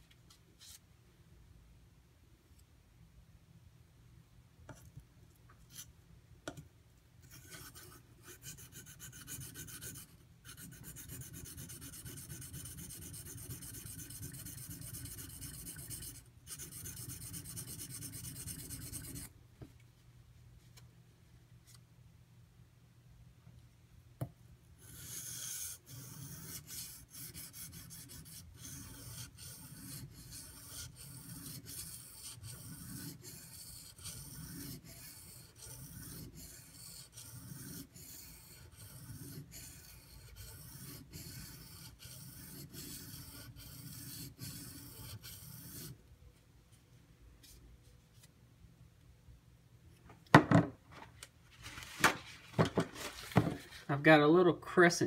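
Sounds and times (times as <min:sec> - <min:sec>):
knife rasping on whetstone: 0:07.3 - 0:19.3, 0:24.8 - 0:46.0.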